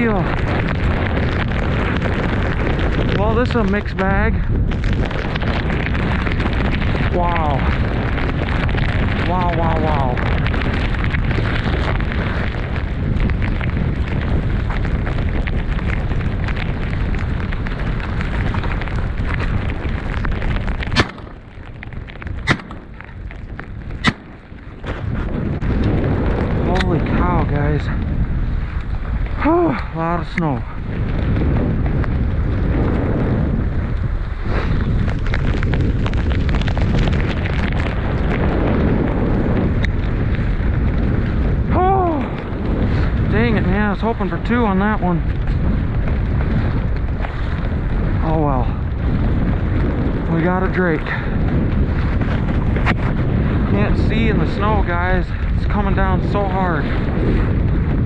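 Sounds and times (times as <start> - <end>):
wind buffeting microphone: 0.0 - 58.0
shotgun shots: 20.9 - 21.4, 22.4 - 23.0, 24.0 - 24.4.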